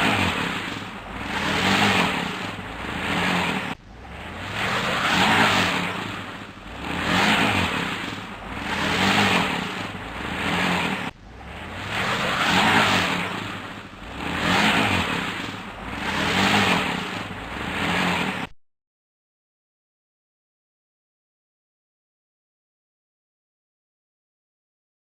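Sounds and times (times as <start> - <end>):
truck engine revving hard: 0.0 - 18.5
wheels spinning in mud: 0.0 - 18.5.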